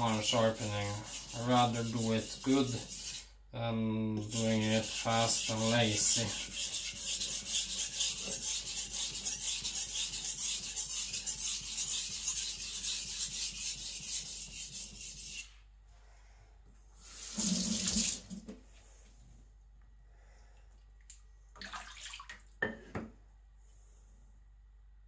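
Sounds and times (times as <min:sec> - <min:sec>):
knife rasping on whetstone: 0:00.0 - 0:03.3, 0:04.3 - 0:15.5.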